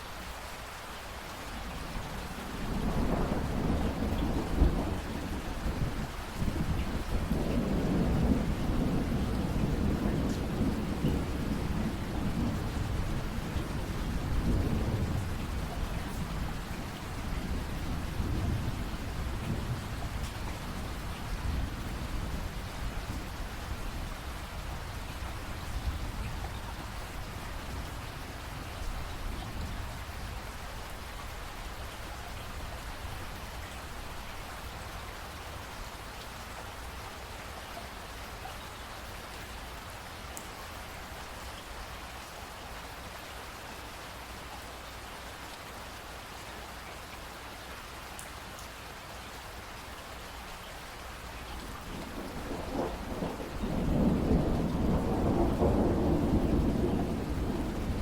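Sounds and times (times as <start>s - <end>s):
steady rainfall: 0.0s - 58.0s
thunder rumbling: 2.3s - 30.0s, 51.6s - 58.0s.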